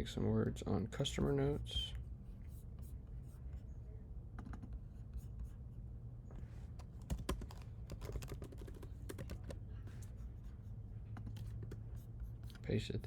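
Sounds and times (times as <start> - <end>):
typing on computer keyboard: 6.8 - 9.6.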